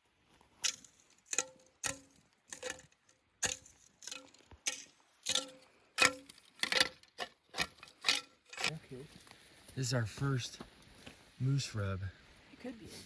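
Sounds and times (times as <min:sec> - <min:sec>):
footsteps crunching on forest floor: 0:08.8 - 0:11.4.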